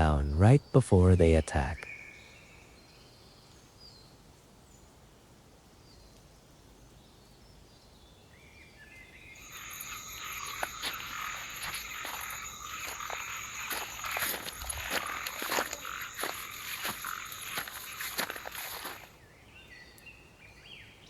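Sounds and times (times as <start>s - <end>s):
thin chirps: 9.3s - 19.1s
high-pitched trilling: 9.4s - 19.1s
rapid croaks and clicks: 9.4s - 19.1s.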